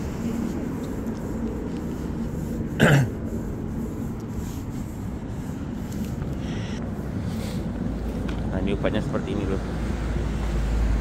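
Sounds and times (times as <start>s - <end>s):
low background rumble: 0.0s - 9.5s
person coughing: 2.8s - 3.2s.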